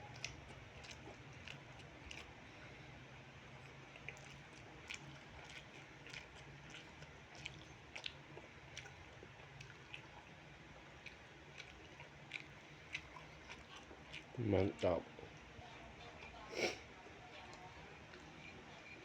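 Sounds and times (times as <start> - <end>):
wet chewing mouth clicks: 0.0 - 2.3, 3.5 - 14.4.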